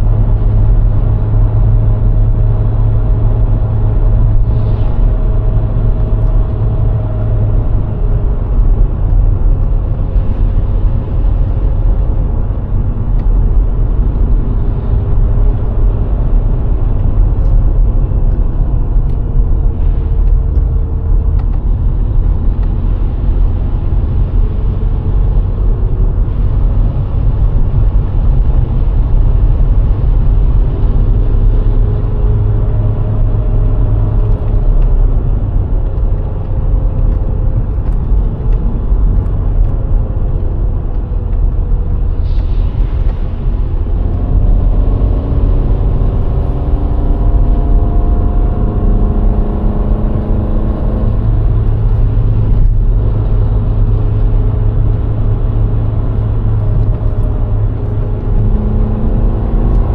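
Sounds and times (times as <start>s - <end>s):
car engine and road rumble: 0.0s - 59.9s.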